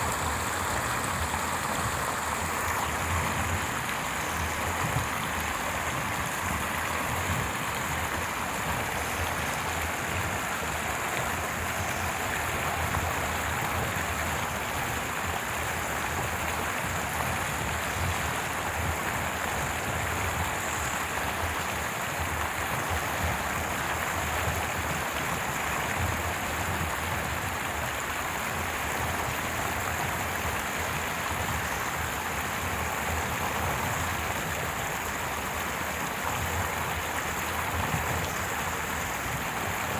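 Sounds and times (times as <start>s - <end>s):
low water rumble: 0.0s - 12.3s
stream rushing and babbling: 0.0s - 39.9s.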